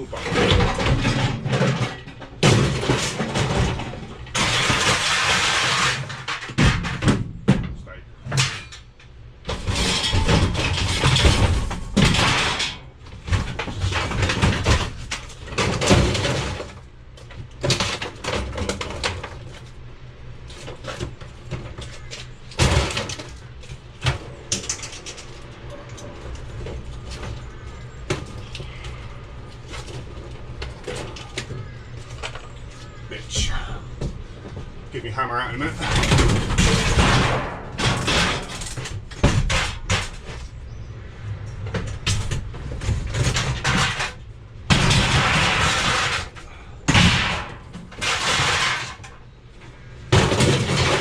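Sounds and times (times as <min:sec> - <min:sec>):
scrap metal clanking: 0:00.0 - 0:16.9, 0:35.6 - 0:40.8, 0:41.5 - 0:51.0.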